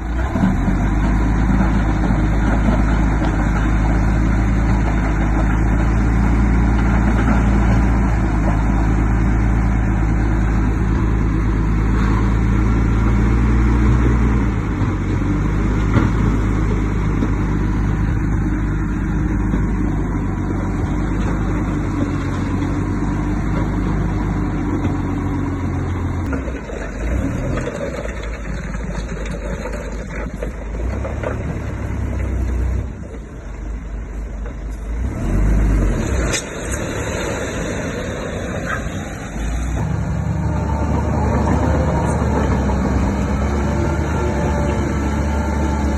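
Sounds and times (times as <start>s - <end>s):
heavy diesel engine under load: 0.0s - 45.9s.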